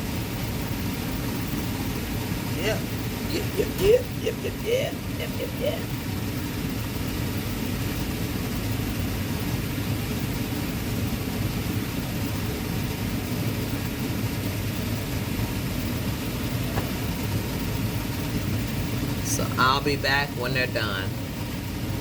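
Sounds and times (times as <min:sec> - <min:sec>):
low mechanical rumble: 0:00.0 - 0:22.0.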